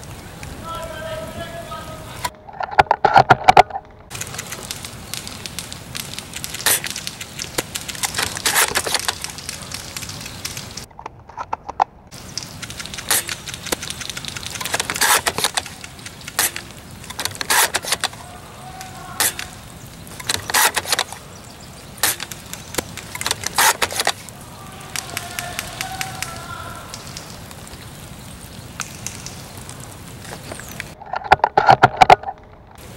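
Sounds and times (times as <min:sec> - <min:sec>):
rain hissing: 0:00.0 - 0:02.4, 0:04.1 - 0:10.9, 0:12.1 - 0:31.0
crackling and rustling: 0:00.0 - 0:32.9.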